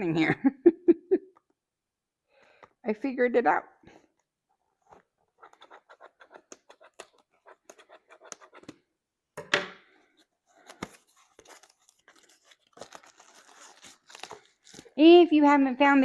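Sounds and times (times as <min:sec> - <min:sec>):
packaging handled: 0:10.1 - 0:15.0
tape ripping: 0:10.7 - 0:15.0.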